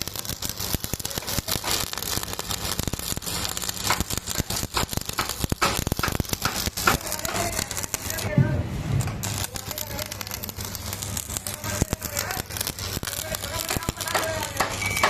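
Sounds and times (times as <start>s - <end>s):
arc welding crackle: 0.0s - 15.0s.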